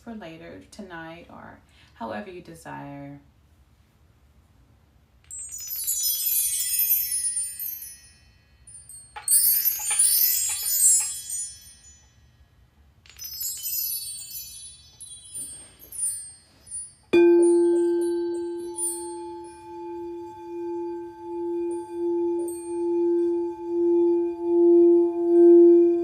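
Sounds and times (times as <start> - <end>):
metal chimes ringing: 5.2 - 26.0.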